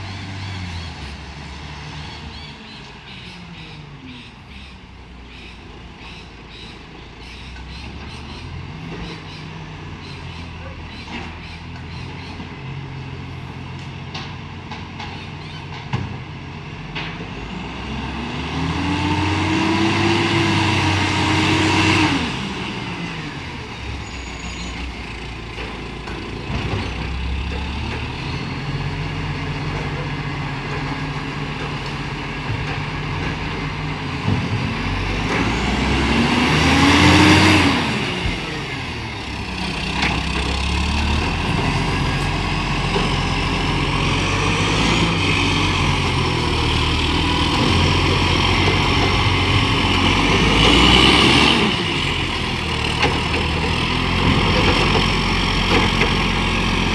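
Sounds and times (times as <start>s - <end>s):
diesel engine idling and revving: 0.0s - 56.9s.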